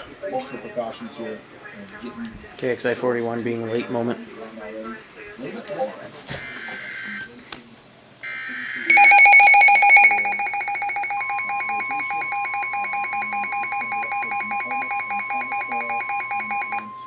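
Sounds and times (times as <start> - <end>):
steady alarm tone: 8.2 - 17.0
rapidly pulsing electronic beep: 8.3 - 17.0.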